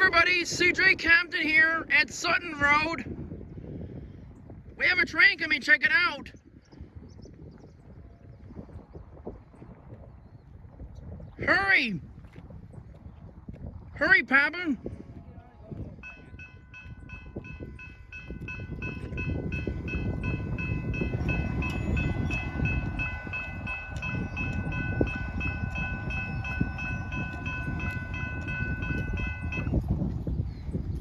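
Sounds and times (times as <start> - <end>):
freight train rumbling: 16.0 - 29.8
railroad crossing bell ringing: 16.0 - 29.9.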